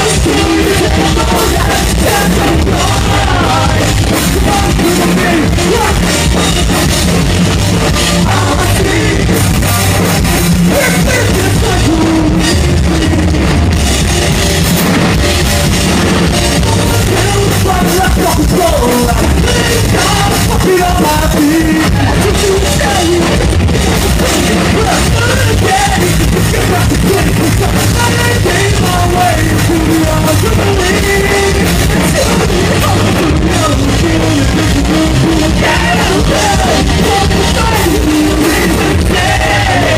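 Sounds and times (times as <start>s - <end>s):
punk rock band playing: 0.0s - 39.9s.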